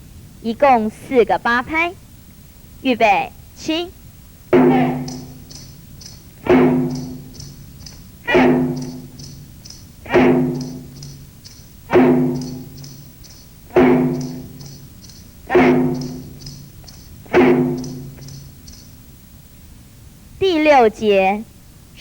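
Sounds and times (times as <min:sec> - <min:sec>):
instrumental exercise music: 0:04.4 - 0:19.0
heavy pitched drum hits: 0:04.5 - 0:18.6
quick high ticks: 0:04.6 - 0:19.0.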